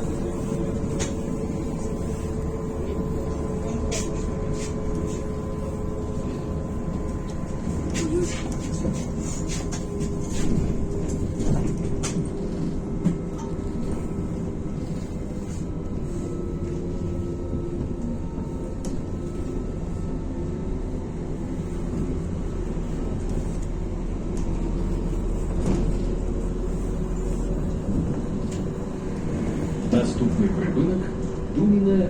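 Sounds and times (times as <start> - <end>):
road and body rattle: 0.0 - 15.8
bus engine drone: 0.0 - 32.0.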